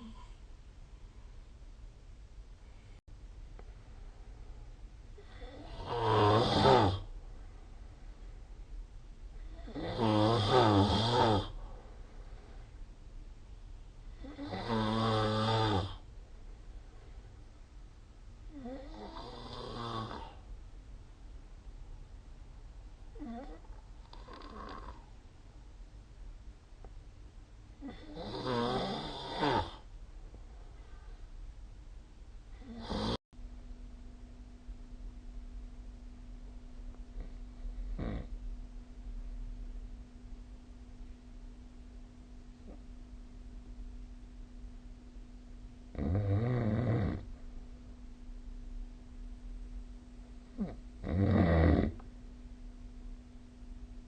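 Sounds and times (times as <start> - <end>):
person snoring: 5.2 - 7.1, 9.4 - 11.6, 14.1 - 16.0, 18.5 - 20.4, 23.2 - 25.1, 27.8 - 29.8, 32.6 - 33.2, 37.8 - 38.3, 46.0 - 47.2, 50.6 - 52.0.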